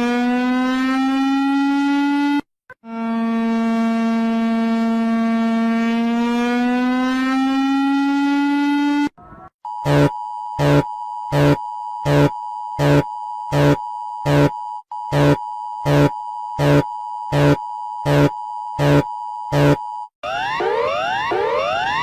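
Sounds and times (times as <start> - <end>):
steady high alarm tone: 9.7 - 22.0
loud regular alarm pulses: 9.8 - 22.0.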